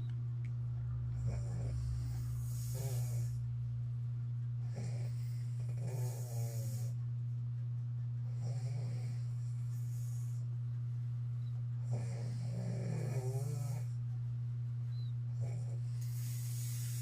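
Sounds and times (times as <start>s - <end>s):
person snoring: 1.1s - 3.5s, 4.6s - 7.0s, 11.8s - 14.0s, 15.4s - 17.0s.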